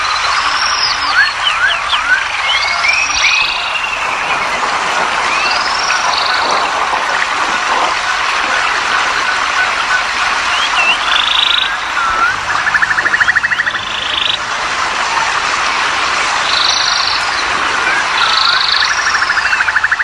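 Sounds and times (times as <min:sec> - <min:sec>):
background frog chorus hiss: 0:00.0 - 0:20.0
frogs trilling: 0:00.0 - 0:20.0
frog chirping notes: 0:00.3 - 0:15.0.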